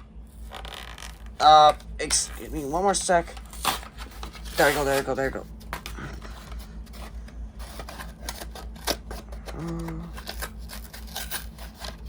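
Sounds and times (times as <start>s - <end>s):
person humming: 9.4s - 10.4s.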